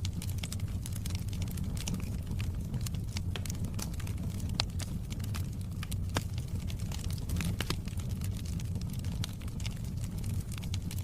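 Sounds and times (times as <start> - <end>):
wood fire crackling: 0.0 - 11.0.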